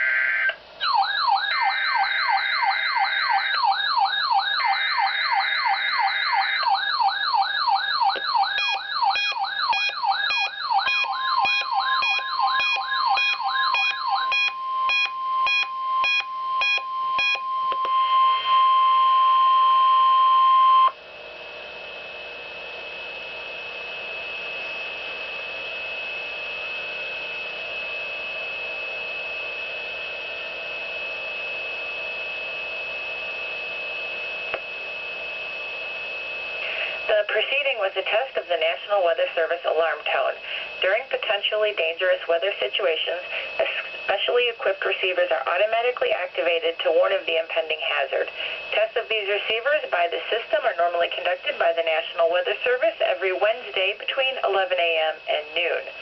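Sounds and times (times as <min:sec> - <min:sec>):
warbling siren alarm: 0:00.0 - 0:38.7
faint high whine: 0:11.6 - 0:56.0
radio hiss: 0:36.5 - 0:56.0.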